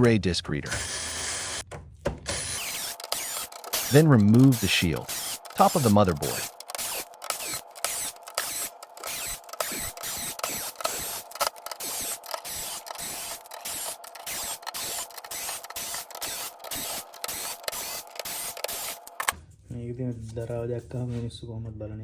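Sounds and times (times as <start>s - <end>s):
hand tools clicking and rasping: 2.3s - 19.4s.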